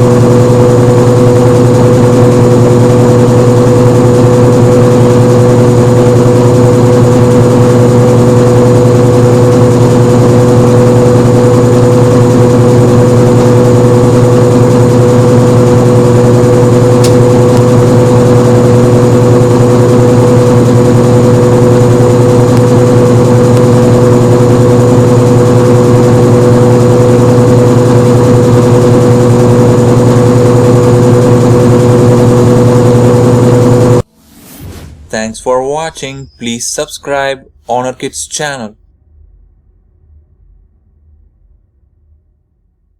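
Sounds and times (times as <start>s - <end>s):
washing machine spinning: 0.0s - 34.0s.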